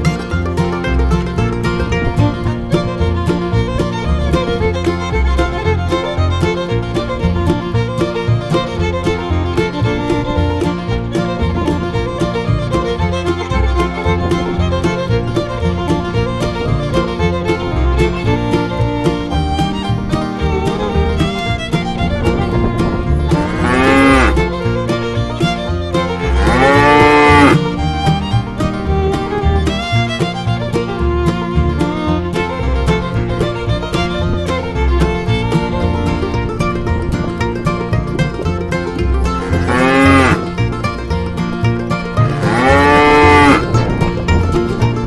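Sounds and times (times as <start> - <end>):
background music: 0.0 - 45.0
cow mooing: 23.4 - 24.4, 26.3 - 27.6, 39.5 - 40.5, 42.3 - 43.7.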